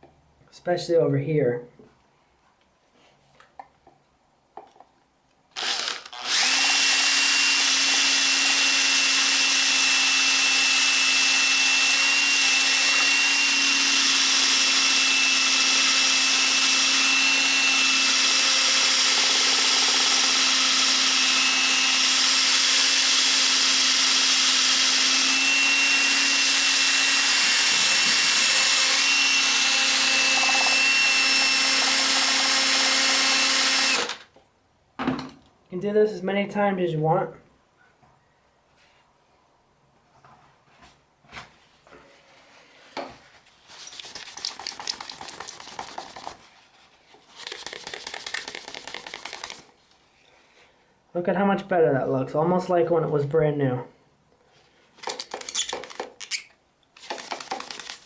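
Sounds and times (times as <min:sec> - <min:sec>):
drill polishing whine: 0:24.9 - 0:34.1.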